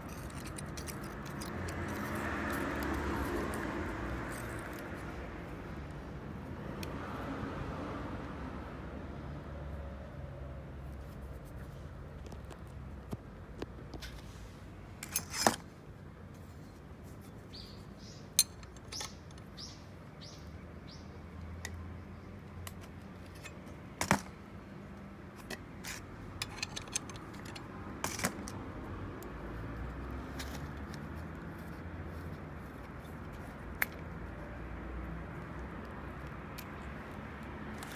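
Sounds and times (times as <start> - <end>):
metallic clinks of hand tools: 0.0 - 3.6.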